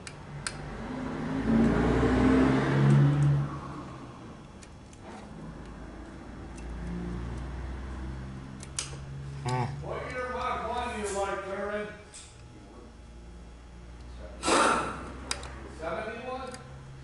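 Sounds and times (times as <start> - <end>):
car engine: 0.0 - 10.5.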